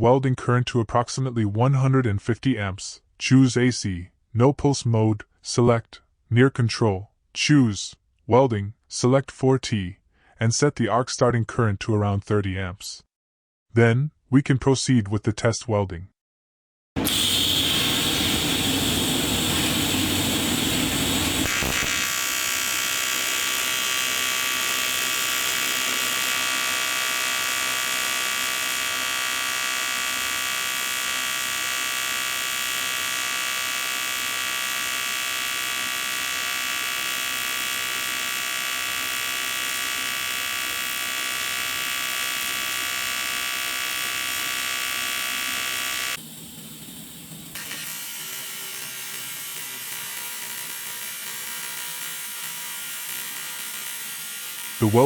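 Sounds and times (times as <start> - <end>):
welding arc buzzing: 17.0 - 55.0.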